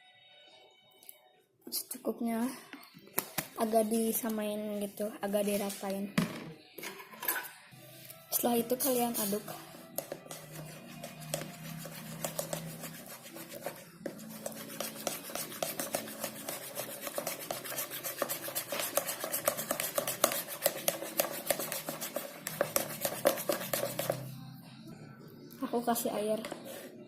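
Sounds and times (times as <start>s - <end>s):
stirrer scraping a container: 8.4s - 24.4s.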